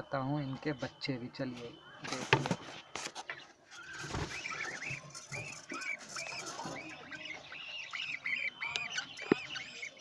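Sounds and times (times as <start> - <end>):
budgerigars chirping: 3.3 - 10.0.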